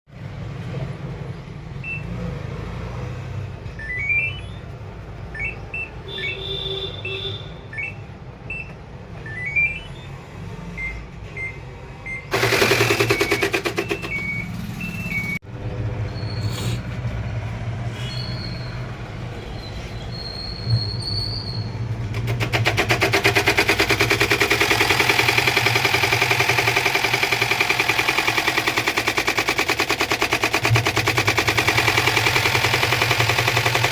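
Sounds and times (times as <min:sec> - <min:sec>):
electronic beeps: 0:01.8 - 0:02.2, 0:03.7 - 0:15.4
motor hum: 0:23.0 - 0:33.9.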